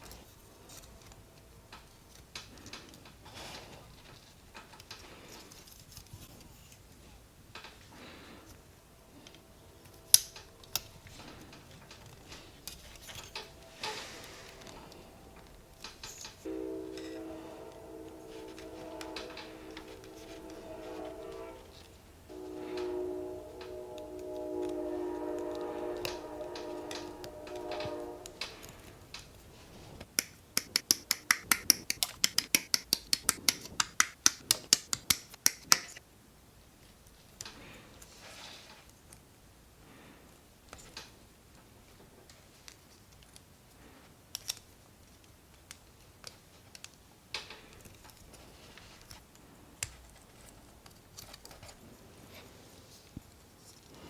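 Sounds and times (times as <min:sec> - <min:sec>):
plastic parts clicking: 0:30.2 - 0:36.0.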